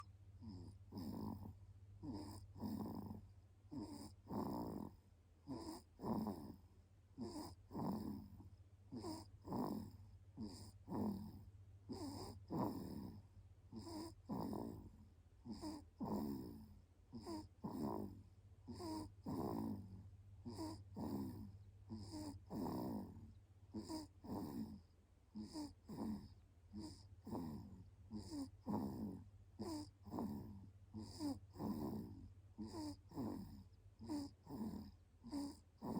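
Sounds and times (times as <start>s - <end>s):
baby snoring: 0.0s - 6.6s, 7.2s - 35.9s.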